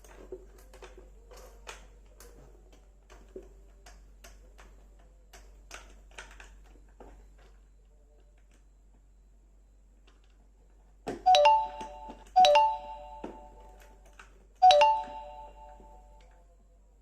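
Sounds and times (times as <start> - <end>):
bright electronic chime: 11.3 - 13.7, 14.6 - 16.0.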